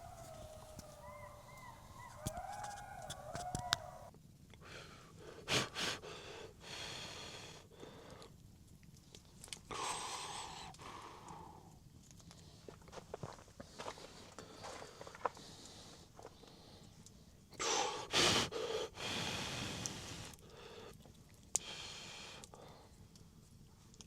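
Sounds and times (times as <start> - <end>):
wolves and jackals howling: 0.0 - 4.1.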